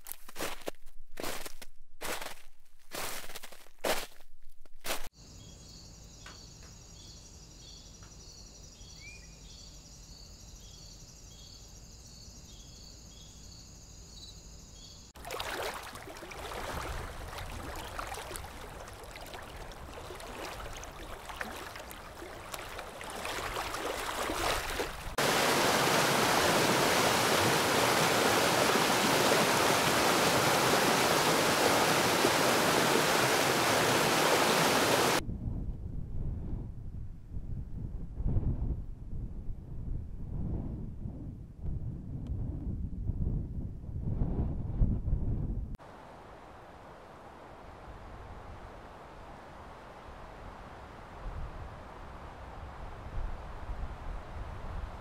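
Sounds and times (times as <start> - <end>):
wind: 0.0 - 55.0
bird chirp: 5.2 - 15.1
insect chirping: 5.2 - 35.2
water lapping and splashing: 15.2 - 35.2
waterfall rushing: 15.2 - 35.2.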